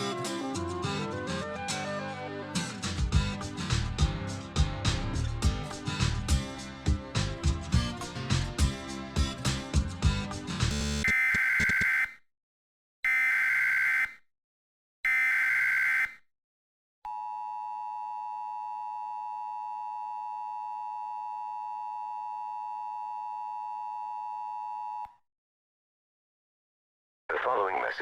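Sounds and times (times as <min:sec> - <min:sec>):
two-tone attention signal: 0:11.0 - 0:12.1.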